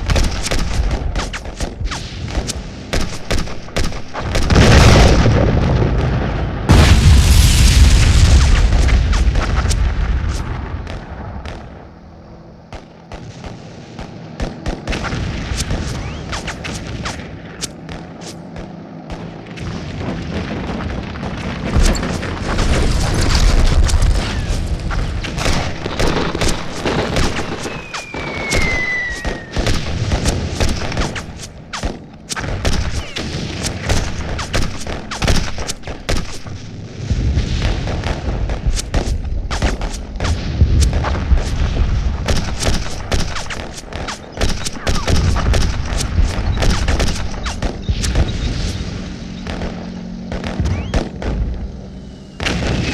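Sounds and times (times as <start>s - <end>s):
rapid gunfire: 0.0s - 5.4s, 12.6s - 36.7s, 37.5s - 52.9s
low explosion booms: 4.4s - 11.8s, 37.0s - 39.6s, 40.2s - 43.1s
falling whistle: 27.6s - 29.6s.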